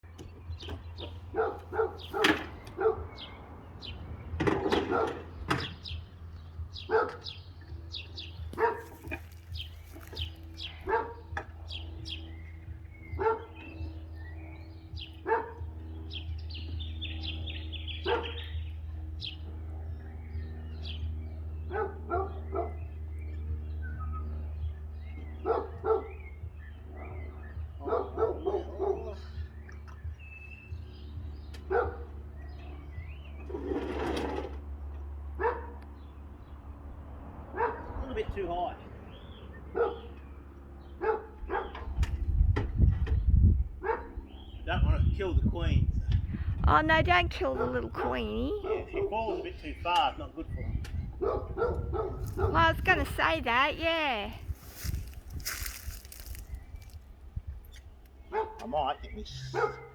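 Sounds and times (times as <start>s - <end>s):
dog barking: 1.3s - 3.3s, 4.9s - 5.2s, 6.8s - 7.4s, 8.5s - 9.2s, 10.8s - 11.4s, 13.1s - 13.7s, 15.2s - 15.8s, 18.0s - 18.5s, 21.7s - 22.8s, 25.4s - 26.3s, 27.0s - 29.4s, 31.7s - 32.1s, 35.4s - 35.8s, 37.5s - 38.1s, 39.7s - 40.2s, 41.0s - 41.9s, 43.8s - 44.2s, 48.0s - 49.4s, 51.2s - 52.6s, 58.3s - 58.7s, 59.3s - 59.9s.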